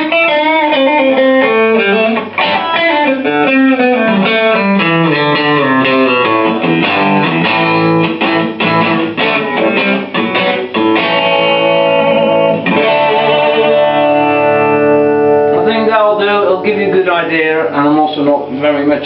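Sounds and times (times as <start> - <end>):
distorted electric guitar: 0.0 - 19.0.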